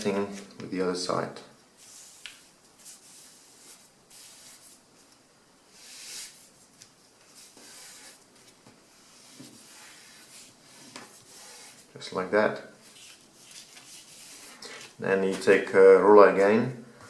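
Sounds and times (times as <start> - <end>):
paper folding and rustling: 12.8 - 15.7.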